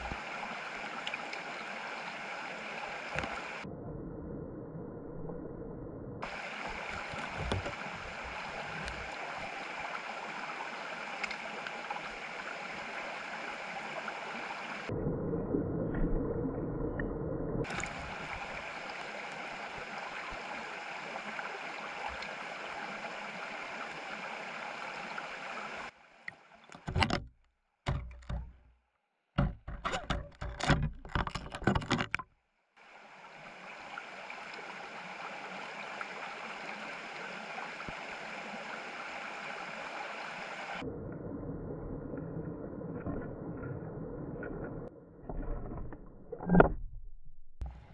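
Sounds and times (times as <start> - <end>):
stream flowing: 0.0 - 3.7, 6.2 - 15.0, 15.9 - 27.3, 27.9 - 28.7, 29.4 - 32.2, 32.8 - 41.0, 42.0 - 46.8
loud knocks and splashes: 27.9 - 28.6.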